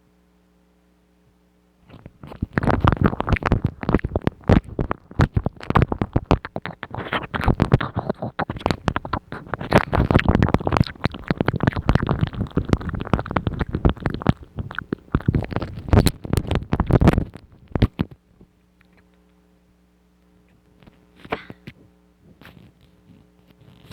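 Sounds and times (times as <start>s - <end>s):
faint steady hum: 0.0s - 23.9s
wet mouth clicks and smacks: 1.9s - 18.1s.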